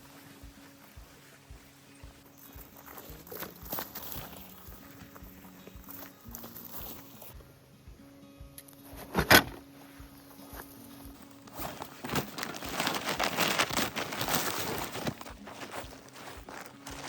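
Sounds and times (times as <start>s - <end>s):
footsteps crunching over rough ground: 0.0s - 17.0s.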